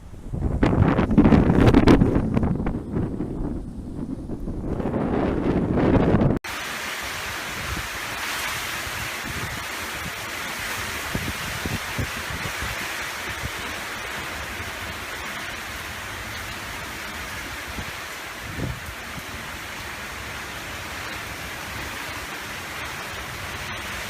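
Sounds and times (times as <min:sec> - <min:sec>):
wind buffeting microphone: 0:00.0 - 0:06.4, 0:07.4 - 0:14.2, 0:15.8 - 0:19.6
strong wind rushing: 0:00.0 - 0:06.5, 0:11.0 - 0:13.6.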